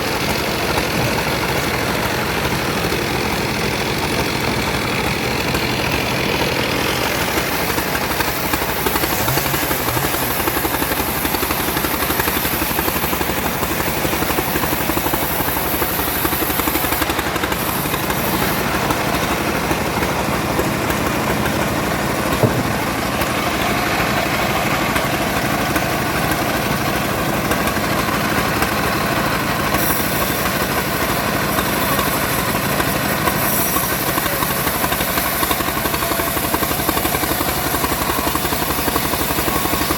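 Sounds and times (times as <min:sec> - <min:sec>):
saw engine running: 0:00.0 - 0:39.9
short knock: 0:22.4 - 0:23.0.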